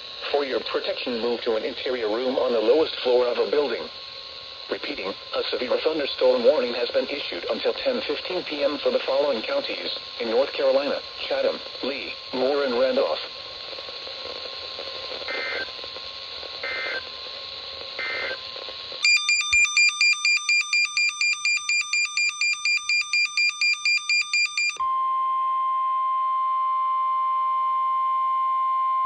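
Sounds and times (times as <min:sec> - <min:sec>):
radio hiss: 0:00.0 - 0:19.0
rapid electronic alert beeps: 0:19.0 - 0:24.8
steady warning alarm tone: 0:19.0 - 0:24.9.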